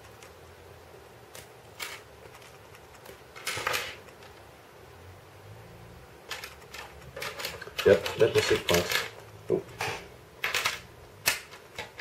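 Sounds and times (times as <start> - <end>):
plastic parts rattling: 6.3 - 9.2.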